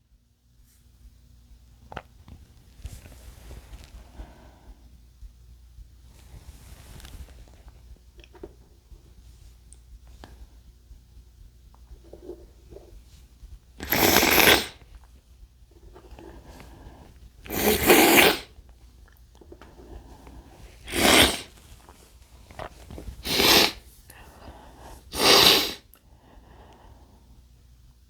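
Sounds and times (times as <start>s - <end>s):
quiet breathing: 2.9s - 5.2s, 15.8s - 17.4s, 19.4s - 25.2s, 25.8s - 27.6s
man sneezing: 23.2s - 23.8s, 25.1s - 25.8s.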